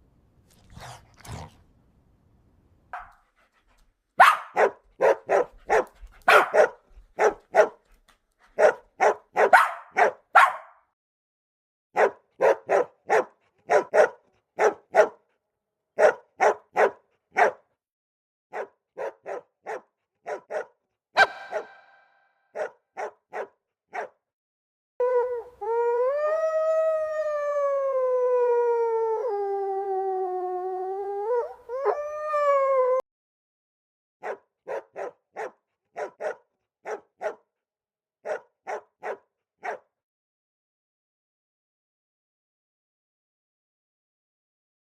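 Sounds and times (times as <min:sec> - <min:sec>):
dog barking: 0:04.2 - 0:07.8, 0:08.6 - 0:10.8, 0:12.0 - 0:15.2, 0:16.0 - 0:17.7, 0:18.5 - 0:24.2, 0:34.2 - 0:37.5, 0:38.2 - 0:39.9.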